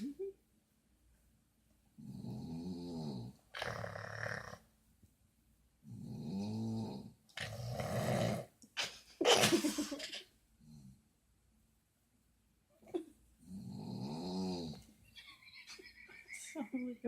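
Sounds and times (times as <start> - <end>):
person snoring: 2.0 - 4.6, 5.9 - 8.5, 13.5 - 14.8.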